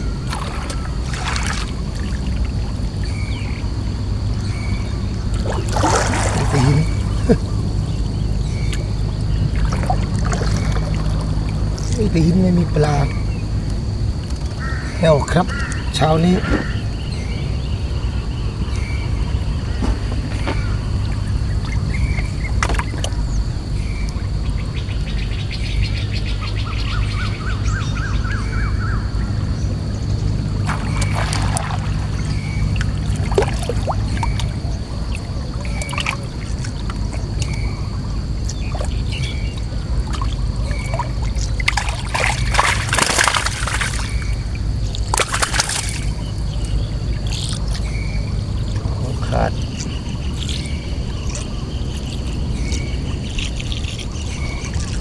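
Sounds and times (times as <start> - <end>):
water splashing and dripping: 0.0 - 16.8, 18.6 - 24.4, 30.4 - 55.0
thin high insect tone: 0.0 - 55.0.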